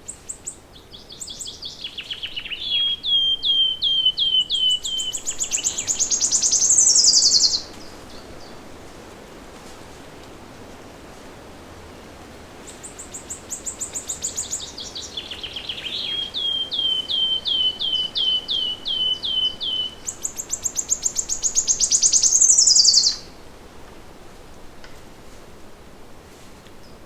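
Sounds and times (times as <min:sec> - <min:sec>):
songbird singing trills: 0:00.0 - 0:08.6, 0:12.7 - 0:23.4
faint steady hiss: 0:00.0 - 0:27.0.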